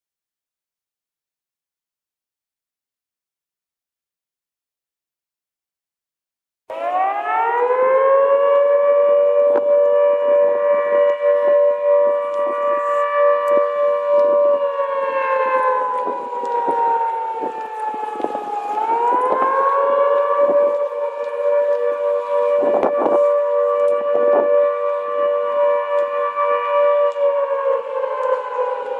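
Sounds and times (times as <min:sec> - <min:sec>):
air raid siren wailing: 0:06.7 - 0:28.9.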